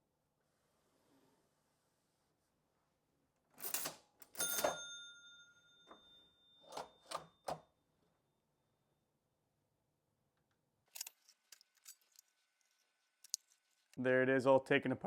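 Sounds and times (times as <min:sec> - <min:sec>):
cash register mechanical clacks: 0:03.6 - 0:07.6
cash register bell ringing: 0:03.6 - 0:07.7.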